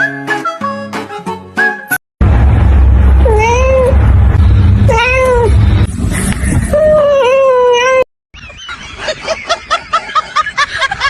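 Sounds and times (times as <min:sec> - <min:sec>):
cat meowing: 0:03.2 - 0:04.0, 0:04.9 - 0:05.5.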